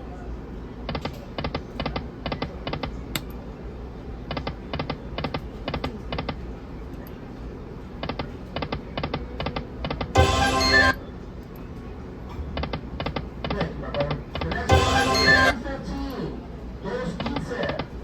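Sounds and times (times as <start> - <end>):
bright chime jingle: 10.2 - 11.0, 14.7 - 15.6.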